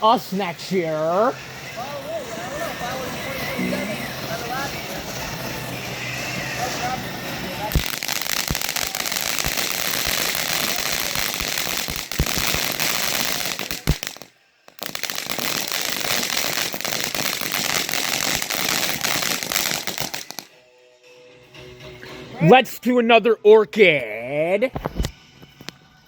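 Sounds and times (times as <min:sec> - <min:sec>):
firework crackling: 0:00.0 - 0:20.6.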